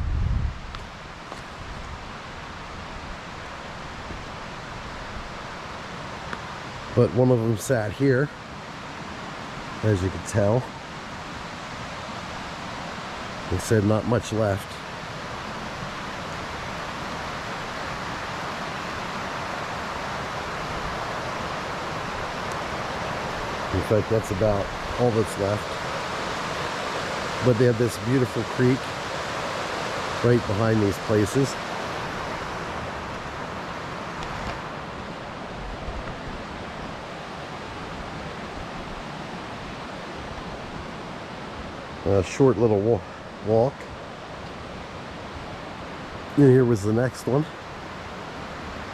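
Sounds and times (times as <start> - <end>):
mountain creek rushing: 0.0 - 48.9.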